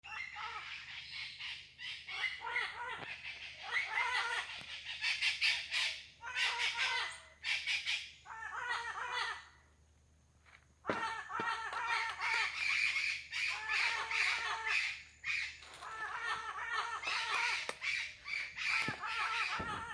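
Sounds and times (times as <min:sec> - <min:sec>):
parrots squawking: 0:10.9 - 0:19.9.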